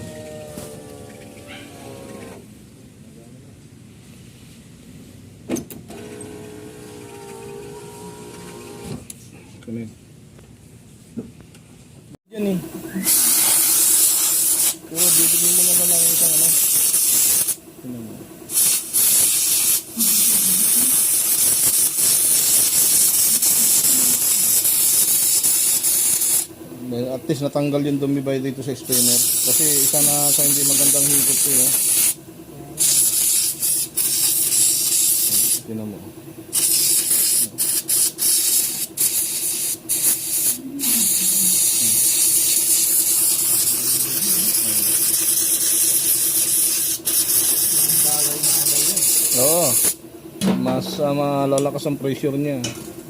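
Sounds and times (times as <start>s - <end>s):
pulsing pump motor hum: 0.0s - 2.4s, 5.9s - 9.0s, 12.4s - 51.1s
pressurised spray hissing: 13.0s - 17.6s, 18.5s - 26.5s, 28.8s - 32.2s, 32.8s - 35.6s, 36.5s - 50.0s.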